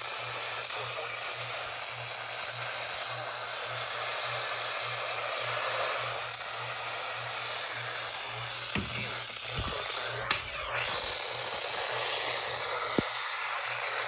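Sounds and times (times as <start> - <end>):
radio static hiss: 8.2 - 11.6
click: 8.8 - 11.2.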